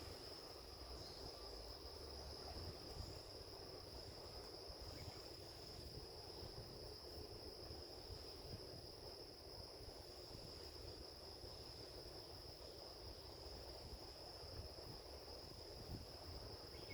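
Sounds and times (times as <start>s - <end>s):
crickets trilling: 0.0s - 16.9s.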